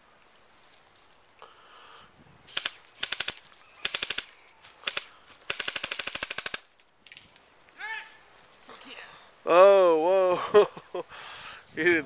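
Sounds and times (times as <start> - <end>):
airsoft guns firing bursts: 2.5 - 6.7.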